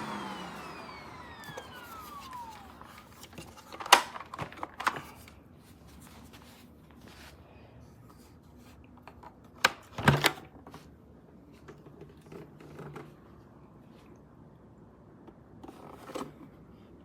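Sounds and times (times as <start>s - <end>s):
vacuum cleaner motor winding down: 0.0s - 3.5s.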